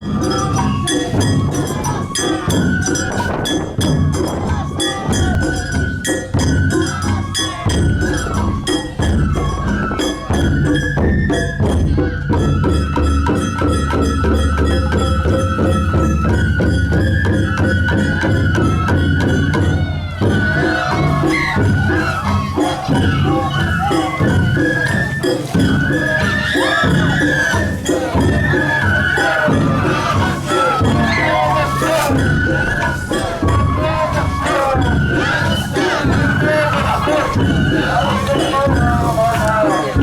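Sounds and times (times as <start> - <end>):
repeating percussion strikes: 0.0 - 40.0
high melody line: 19.8 - 40.0.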